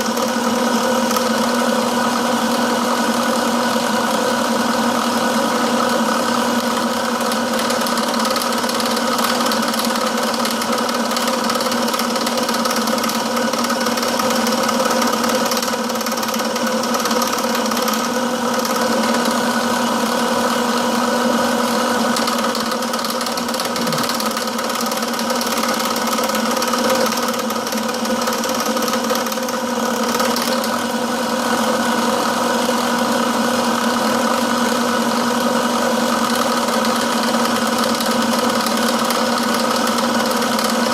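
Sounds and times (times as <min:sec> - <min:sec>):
milling machine cutting: 0:05.8 - 0:31.3.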